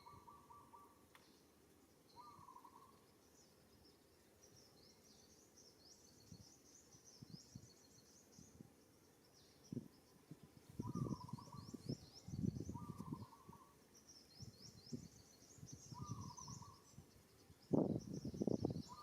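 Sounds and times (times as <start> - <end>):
small bird twittering: 0.0 - 1.4, 2.1 - 3.4, 10.8 - 19.0.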